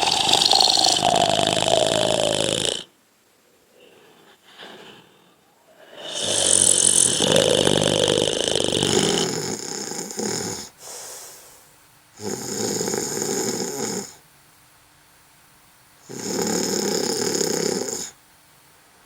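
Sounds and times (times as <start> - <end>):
person snoring: 0.0 - 2.9, 3.8 - 11.6, 12.2 - 14.2, 16.1 - 18.2.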